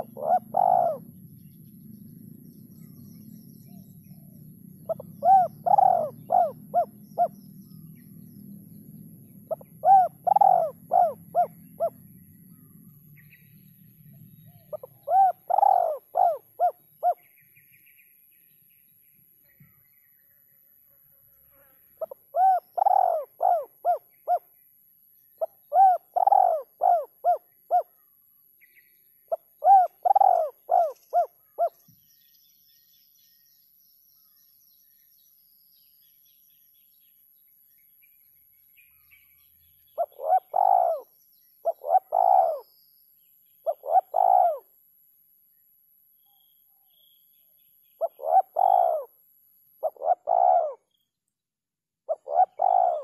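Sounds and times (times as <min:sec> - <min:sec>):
dove cooing: 0:00.0 - 0:01.2, 0:04.1 - 0:07.4, 0:09.5 - 0:12.1, 0:14.6 - 0:17.3, 0:22.0 - 0:24.4, 0:25.4 - 0:27.9, 0:29.3 - 0:31.8, 0:40.0 - 0:42.6, 0:43.7 - 0:44.7, 0:48.0 - 0:49.1, 0:49.8 - 0:50.8, 0:52.1 - 0:53.0.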